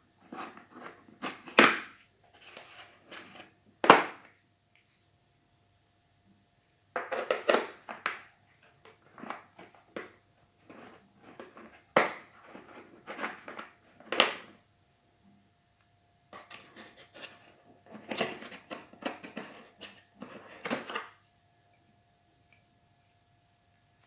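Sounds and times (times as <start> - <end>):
rustling and crinkling: 0.0 - 5.1, 7.0 - 14.8, 15.7 - 21.4.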